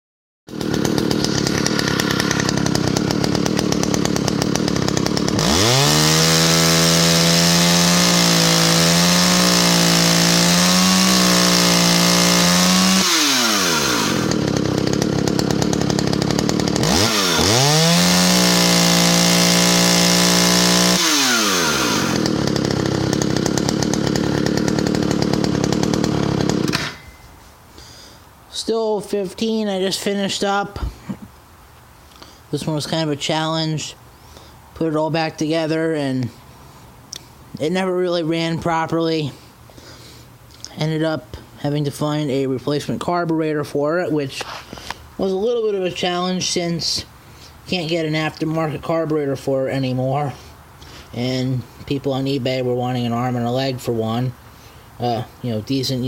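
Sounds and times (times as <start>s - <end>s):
chainsaw idling and revving: 0.5s - 28.1s, 32.6s - 56.0s.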